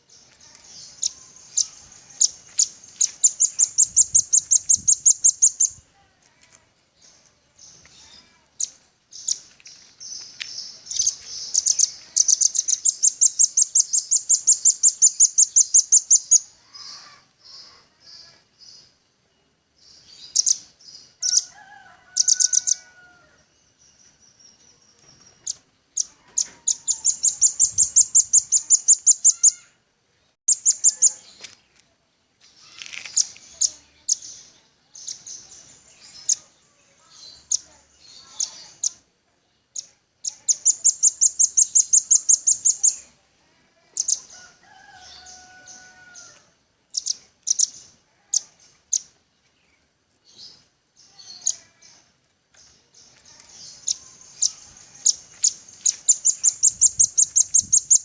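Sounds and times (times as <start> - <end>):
bird singing rapid chattering notes: 0.0 - 5.8, 7.0 - 19.0, 19.8 - 21.5, 22.2 - 22.8, 23.6 - 29.7, 30.5 - 31.4, 32.6 - 43.1, 43.9 - 44.3, 46.9 - 58.0
bird chips: 0.1 - 17.8, 32.4 - 36.4, 52.6 - 58.0.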